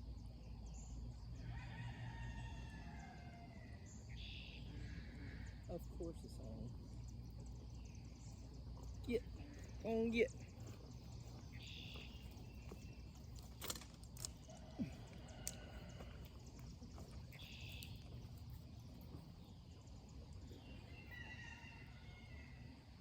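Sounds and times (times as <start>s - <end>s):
bird chirps: 3.9s - 13.7s, 14.3s - 22.3s.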